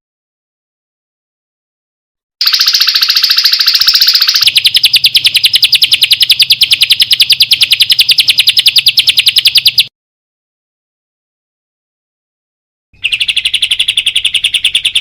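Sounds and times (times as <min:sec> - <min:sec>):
songbird trilling: 0:02.4 - 0:09.9, 0:13.0 - 0:15.0.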